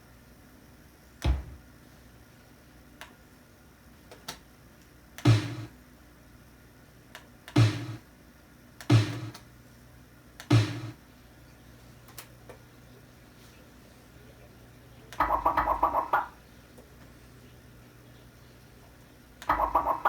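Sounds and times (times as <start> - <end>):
drum hits: 5.2 - 5.7, 7.6 - 8.0, 8.9 - 9.4, 10.5 - 11.0.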